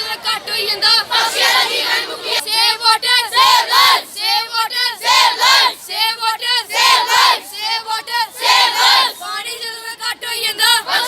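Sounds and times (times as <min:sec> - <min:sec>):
children singing in unison: 0:00.0 - 0:11.0.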